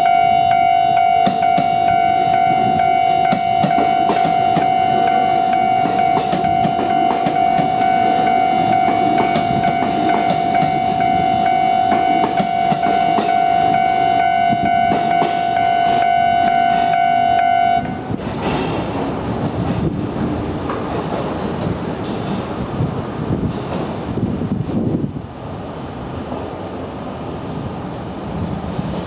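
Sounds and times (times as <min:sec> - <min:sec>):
level-crossing alarm ringing: 0:00.0 - 0:18.1
train wheels clattering on rails: 0:00.5 - 0:17.2, 0:17.8 - 0:25.2.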